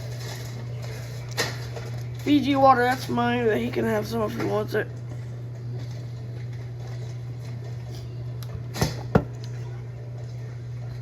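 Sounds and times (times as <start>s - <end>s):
steady low hum: 0.0s - 11.0s
grocery items knocking: 8.8s - 9.4s.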